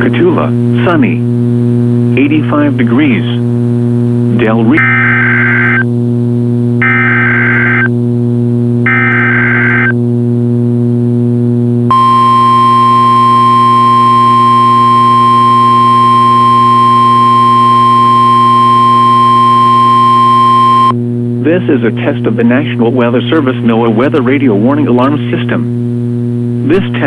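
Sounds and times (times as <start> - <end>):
low electrical hum: 0.0 - 27.0
warning alarm tone: 6.8 - 7.9, 8.8 - 9.9, 11.9 - 21.0
digital header data screech: 11.9 - 21.0.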